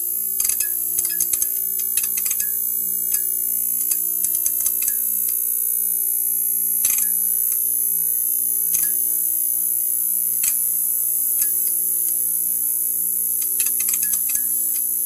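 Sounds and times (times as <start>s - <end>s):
neon sign buzzing: 0.0s - 15.0s.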